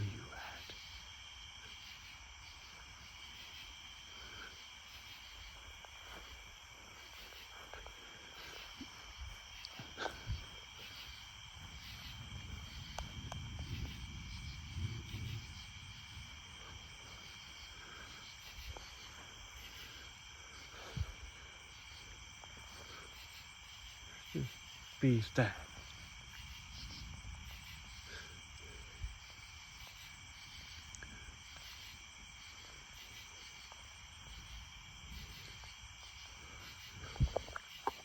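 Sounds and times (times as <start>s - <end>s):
night insects chirping: 0.0s - 38.0s
low thunder rumbling: 9.2s - 20.0s, 24.3s - 30.8s
sharp thunder cracks: 11.7s - 16.4s.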